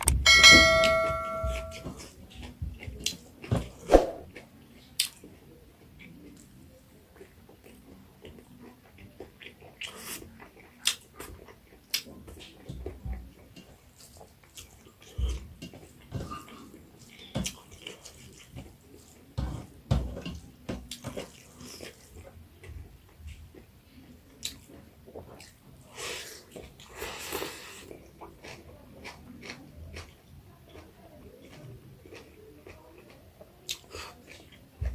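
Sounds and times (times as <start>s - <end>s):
person chewing with lip smacks: 7.2s - 12.7s, 24.3s - 25.6s, 26.3s - 34.8s.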